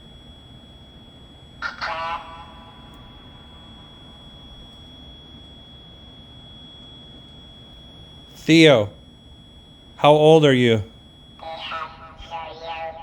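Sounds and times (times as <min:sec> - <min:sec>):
radio-like voice fragment: 0:08.4 - 0:08.9, 0:10.0 - 0:10.9.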